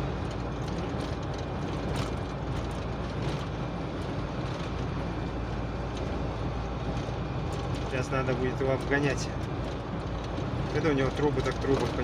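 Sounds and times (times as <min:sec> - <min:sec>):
truck engine and road noise: 0:00.0 - 0:12.0.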